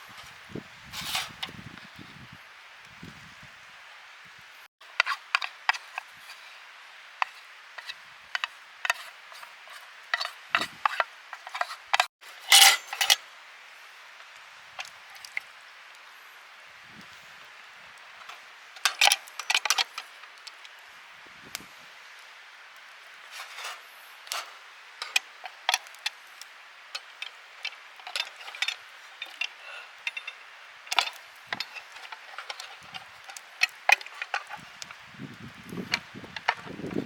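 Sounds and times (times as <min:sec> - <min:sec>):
metal utensils clinking on tin: 0:10.1 - 0:13.2, 0:18.2 - 0:20.2, 0:23.4 - 0:26.2, 0:27.0 - 0:34.9.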